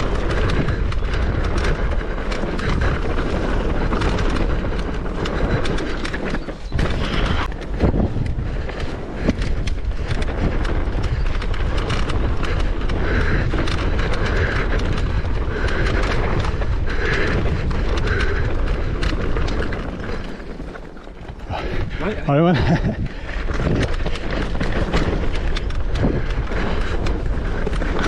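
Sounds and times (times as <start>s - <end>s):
bike rattling and clicking: 0.0s - 28.0s
bike tyres rumbling on trail: 0.0s - 28.0s
rider breathing heavily: 0.0s - 28.0s.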